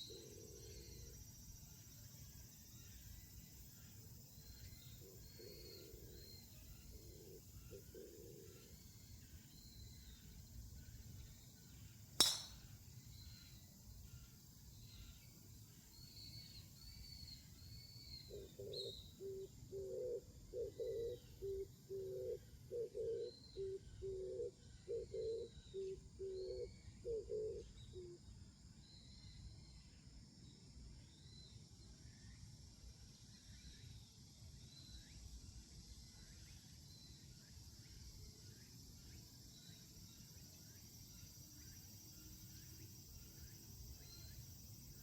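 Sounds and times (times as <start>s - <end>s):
sharp crack: 12.2s - 12.7s
birds chirping: 12.2s - 13.4s.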